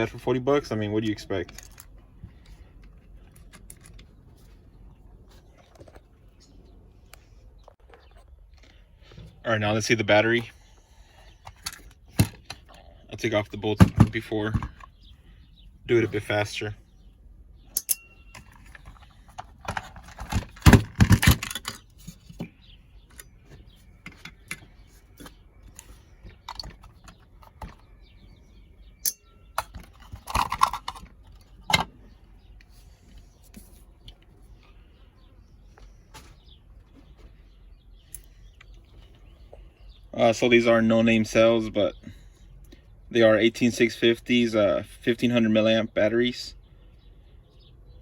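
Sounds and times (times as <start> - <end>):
handling noises: 0.0 - 10.6, 11.2 - 40.8
small clicks and rattles of screws: 1.4 - 4.2.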